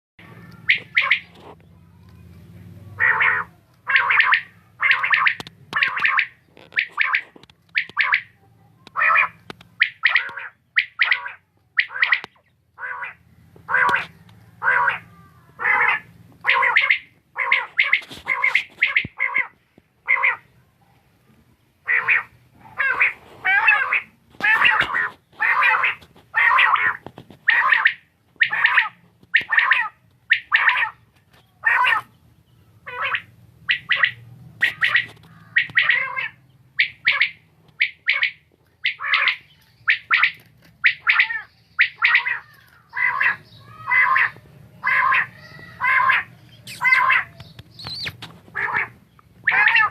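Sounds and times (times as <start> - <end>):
quail calling: 0.2 - 1.6, 2.9 - 20.5, 21.8 - 32.2, 32.8 - 49.9.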